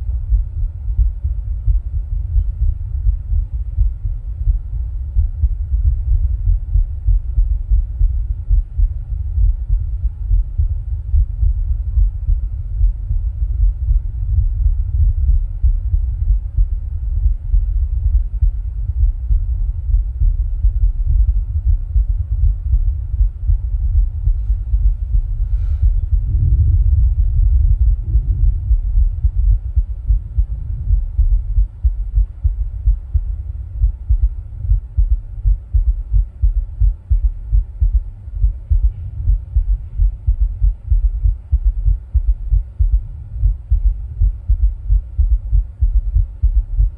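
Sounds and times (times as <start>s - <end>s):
muffled heartbeats: 0.0s - 46.9s.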